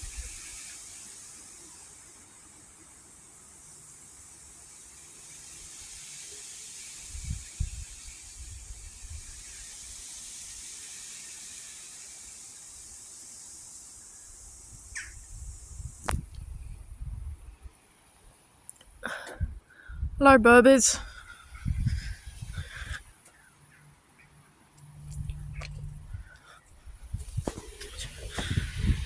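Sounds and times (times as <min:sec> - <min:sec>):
wind rustling tree leaves: 0:00.0 - 0:29.0
wind buffeting microphone: 0:07.0 - 0:09.5, 0:14.5 - 0:17.7, 0:21.0 - 0:23.1, 0:24.8 - 0:29.0.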